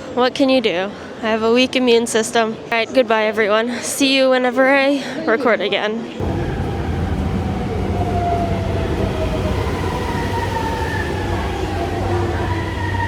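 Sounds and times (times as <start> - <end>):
motor whines gliding downward: 6.2 - 13.0
subway train rumble and hum: 6.2 - 13.0.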